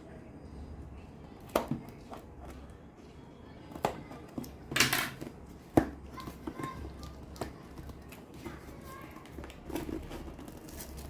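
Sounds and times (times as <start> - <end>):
scraping rustle of cardboard: 8.0 - 11.0.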